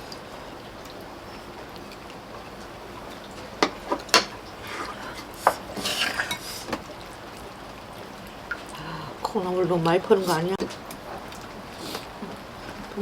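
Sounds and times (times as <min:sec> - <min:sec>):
utensils clinking: 0:03.6 - 0:06.7
utensil scraping pot: 0:03.6 - 0:06.8.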